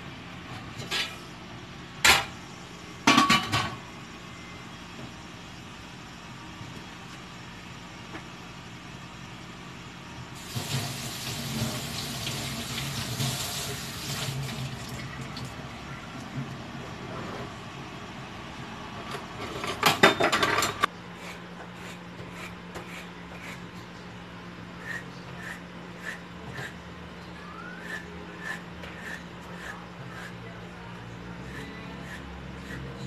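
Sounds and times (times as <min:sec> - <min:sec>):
tap water running into sink: 0:10.4 - 0:15.5
dishes and utensils clinking: 0:19.4 - 0:20.9.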